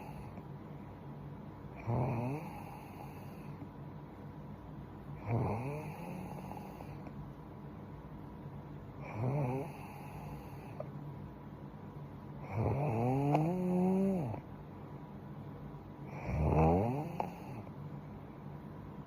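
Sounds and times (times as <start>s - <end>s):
woman snoring: 1.8s - 3.6s, 5.2s - 7.0s, 9.0s - 10.8s, 12.4s - 14.4s, 16.1s - 17.7s.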